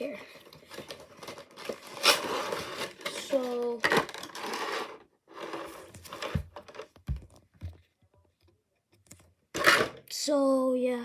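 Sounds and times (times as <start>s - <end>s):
cardboard and plastic rustling: 0.0s - 7.9s.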